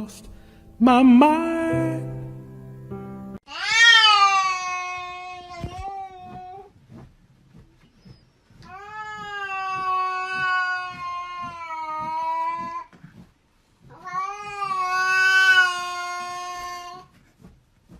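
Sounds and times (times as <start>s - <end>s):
cat yowling: 3.5s - 6.6s, 8.7s - 12.8s, 13.9s - 17.0s.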